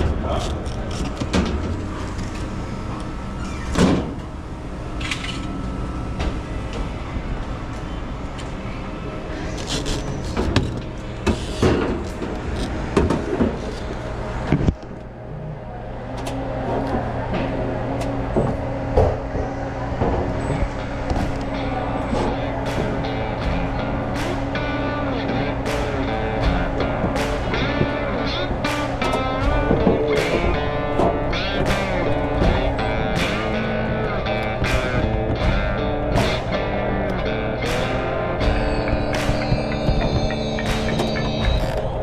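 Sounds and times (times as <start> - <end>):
knocks clicks and clatter: 0.0 - 3.0, 16.2 - 42.0
machinery hum: 0.0 - 42.0.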